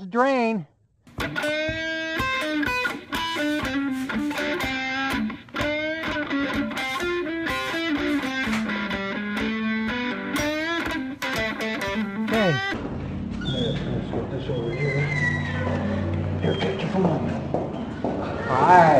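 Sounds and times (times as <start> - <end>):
electric guitar music: 1.1 - 12.8.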